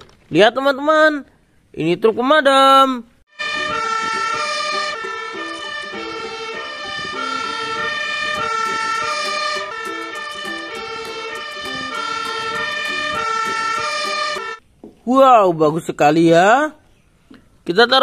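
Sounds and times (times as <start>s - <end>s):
toy electronic tune: 3.4s - 14.6s.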